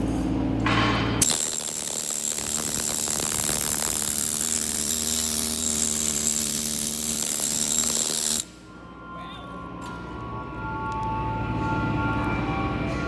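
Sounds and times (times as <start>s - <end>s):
welding arc crackling: 1.2s - 8.5s.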